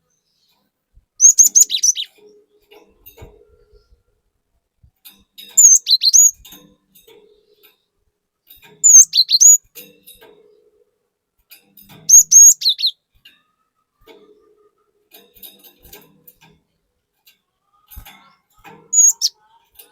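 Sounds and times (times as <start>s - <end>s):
bird whistling song: 1.2s - 2.2s, 5.6s - 6.5s, 8.8s - 9.7s, 12.1s - 13.0s, 18.9s - 19.4s.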